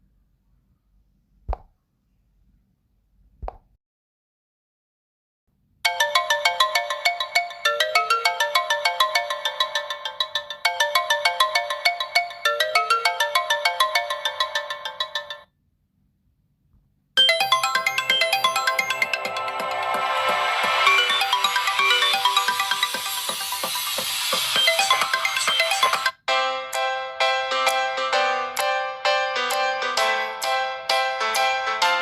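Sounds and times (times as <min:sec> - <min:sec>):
fuller phone ringtone: 0:05.9 - 0:15.5, 0:17.2 - 0:26.2
phone ringtone melody: 0:05.9 - 0:15.5, 0:17.2 - 0:32.0.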